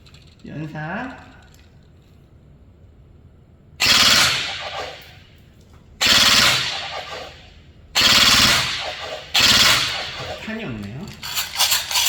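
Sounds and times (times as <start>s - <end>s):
airsoft rifle full-auto bursts: 3.8s - 5.1s, 6.0s - 7.4s, 8.0s - 10.5s.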